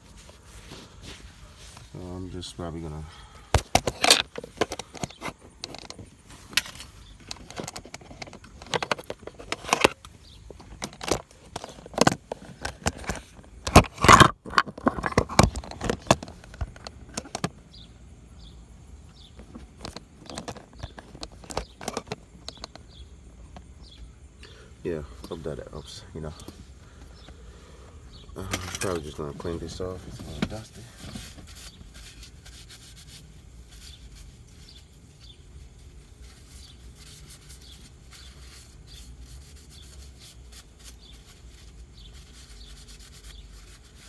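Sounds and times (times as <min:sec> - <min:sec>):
plastic trim clicking and rattling: 0:03.6 - 0:17.6, 0:19.4 - 0:22.8.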